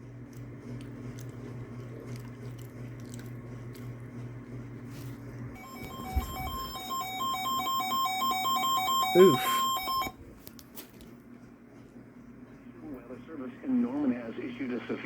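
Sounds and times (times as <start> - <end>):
warbling digital alert tones: 5.6 - 10.1
radio receiver low hum: 12.4 - 15.0.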